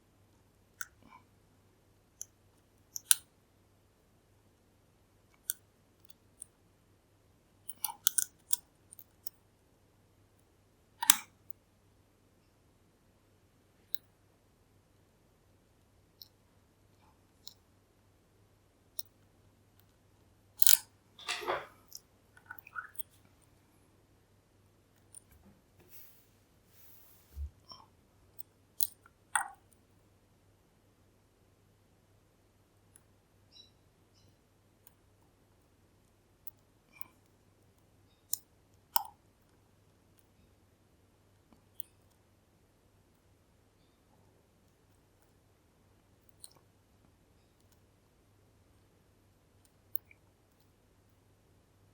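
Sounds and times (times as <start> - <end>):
lock picking tool clicks: 3.0 - 3.2, 7.7 - 9.4, 11.0 - 11.3, 20.6 - 22.0, 28.4 - 29.5.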